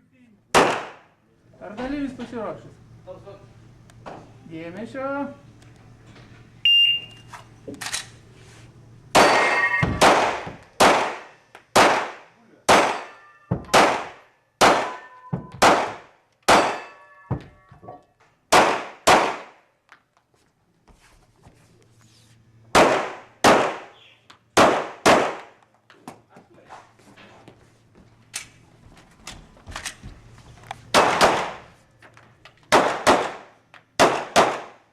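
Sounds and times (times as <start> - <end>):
handgun firing: 0.6 - 1.0, 9.2 - 16.9, 18.5 - 19.6, 22.8 - 24.0, 24.6 - 25.6, 30.9 - 31.6, 32.7 - 34.8
shot timer beep: 6.6 - 7.3, 9.2 - 10.0
metallic target ring: 9.2 - 10.2, 12.8 - 13.5, 14.8 - 15.6, 16.5 - 17.6.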